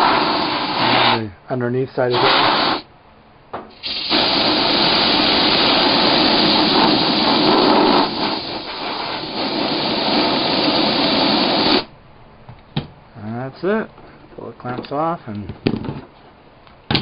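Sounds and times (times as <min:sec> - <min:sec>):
compressed air hissing: 0:00.0 - 0:01.4, 0:02.0 - 0:02.9, 0:03.7 - 0:11.9.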